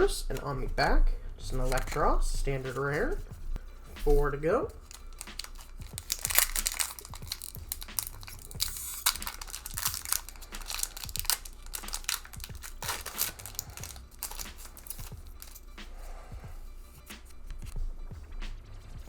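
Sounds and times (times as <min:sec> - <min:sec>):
foil wrapper crinkling: 0:01.6 - 0:02.0, 0:04.0 - 0:15.8
foil wrapper tearing: 0:04.0 - 0:15.8.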